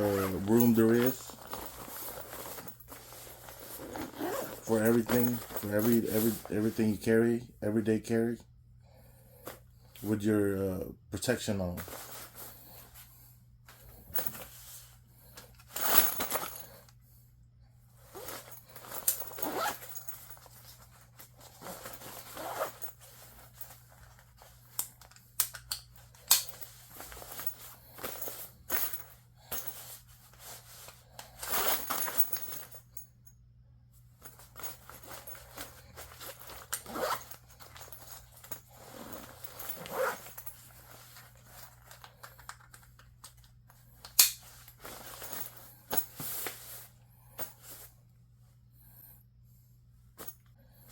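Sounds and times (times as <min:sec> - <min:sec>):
fabric bag rustling: 0:00.0 - 0:07.0, 0:11.8 - 0:13.0, 0:18.0 - 0:24.5, 0:34.2 - 0:42.2, 0:44.4 - 0:48.0.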